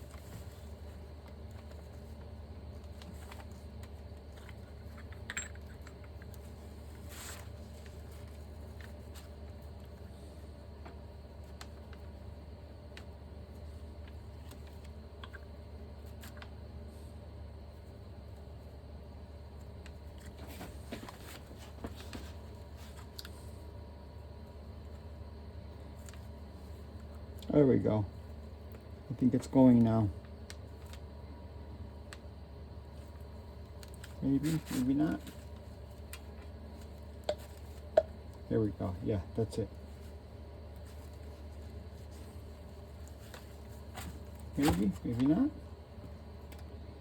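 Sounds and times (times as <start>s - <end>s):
steady low hum: 0.0s - 47.0s.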